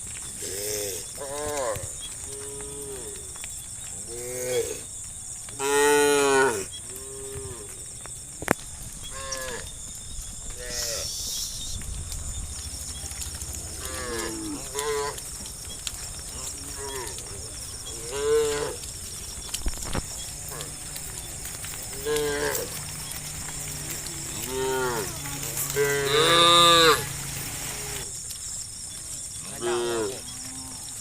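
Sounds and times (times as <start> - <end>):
cattle mooing: 13.2 - 15.3, 16.2 - 18.9, 20.4 - 28.0, 29.5 - 30.9.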